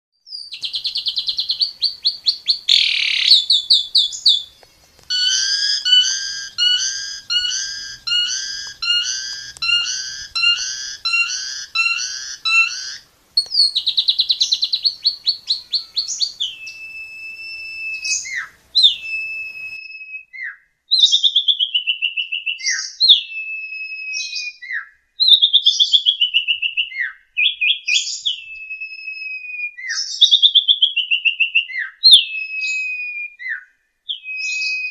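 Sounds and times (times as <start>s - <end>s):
starling singing: 0.3s - 19.8s.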